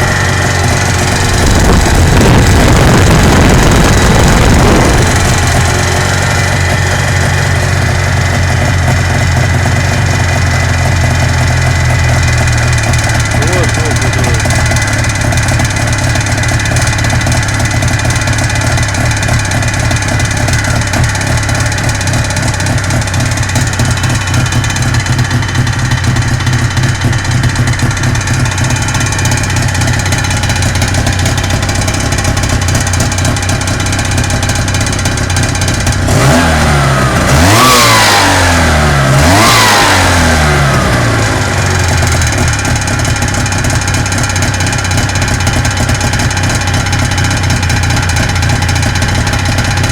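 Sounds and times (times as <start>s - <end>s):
car engine idling and revving: 0.0s - 49.9s.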